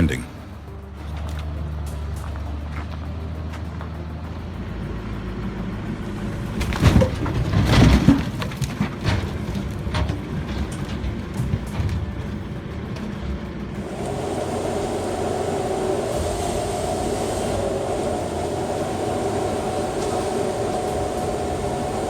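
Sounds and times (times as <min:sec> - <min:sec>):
truck diesel engine running: 0:00.0 - 0:22.0
loud knocking and crashing: 0:06.4 - 0:12.5.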